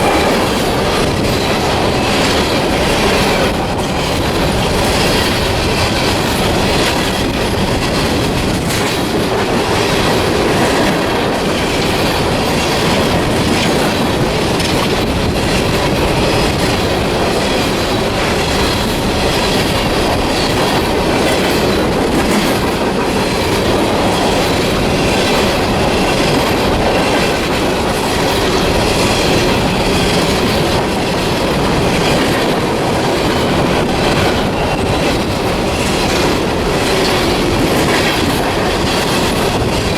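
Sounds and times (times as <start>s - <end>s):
train cars passing: 0.0s - 39.9s
wheels clacking over rail joints: 0.0s - 39.9s.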